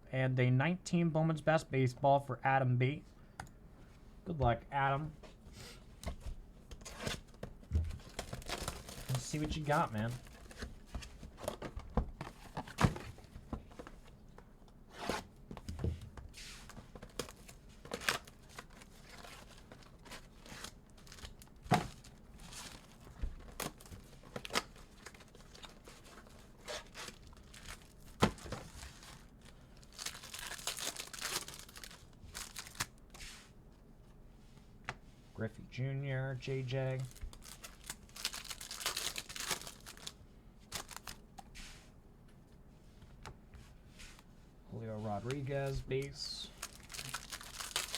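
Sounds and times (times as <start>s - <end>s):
packaging tearing and crinkling: 8.0s - 10.7s, 29.8s - 32.9s, 37.0s - 41.2s, 46.0s - 47.9s.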